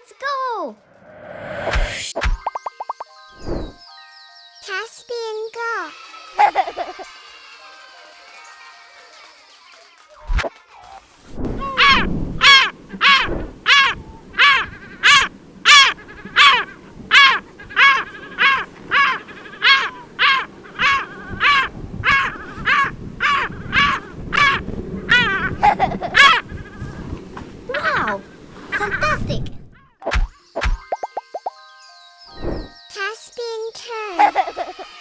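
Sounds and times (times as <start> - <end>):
gull laughing calls: 6.3 - 7.2, 11.6 - 27.0, 34.1 - 35.0.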